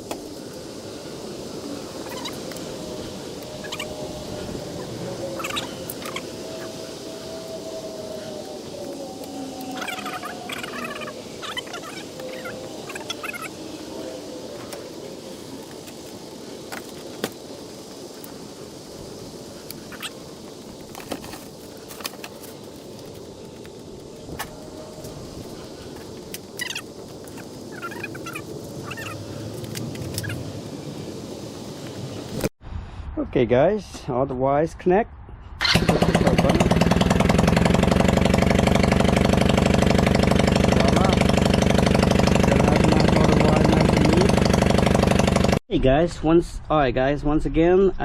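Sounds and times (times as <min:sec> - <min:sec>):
small engine idling: 0:35.6 - 0:45.6.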